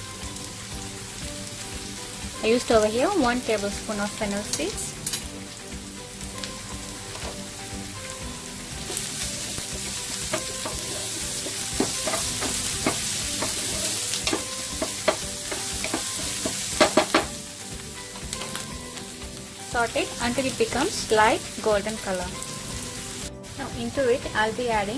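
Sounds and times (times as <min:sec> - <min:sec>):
vegetables sizzling in hot oil: 0:00.0 - 0:24.9.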